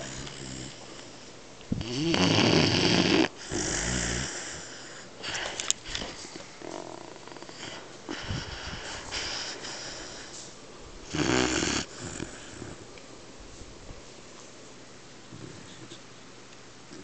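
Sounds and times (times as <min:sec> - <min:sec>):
puppy snoring: 0:00.0 - 0:10.3, 0:11.0 - 0:12.9, 0:15.3 - 0:16.0.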